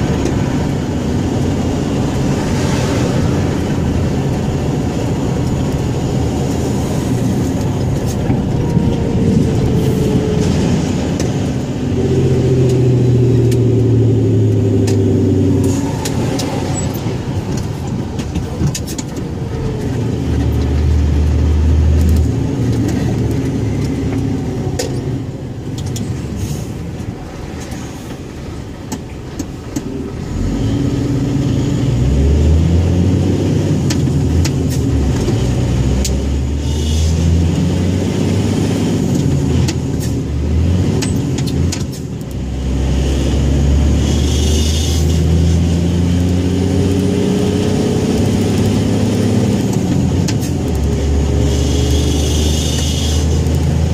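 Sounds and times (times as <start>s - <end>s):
truck diesel engine running: 0.0s - 32.1s.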